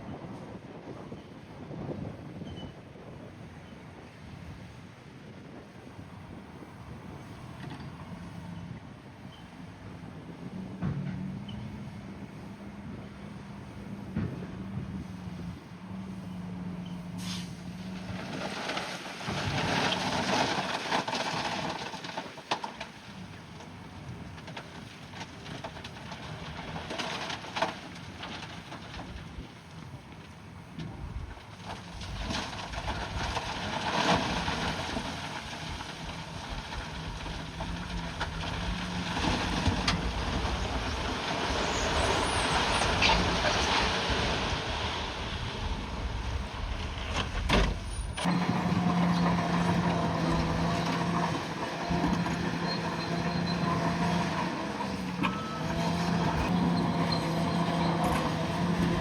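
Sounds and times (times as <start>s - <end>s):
rough grinding and scraping: 16.3s - 29.5s, 30.8s - 59.0s
heavy diesel engine running: 30.8s - 59.0s.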